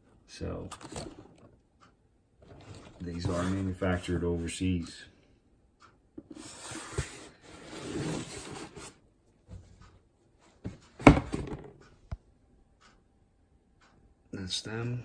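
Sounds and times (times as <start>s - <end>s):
rubbing rustling scrape: 6.4s - 9.0s.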